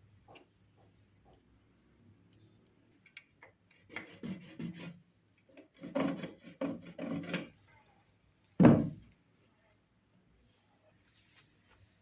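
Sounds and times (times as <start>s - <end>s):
rasping wood by hand: 3.9s - 5.0s, 5.7s - 7.5s.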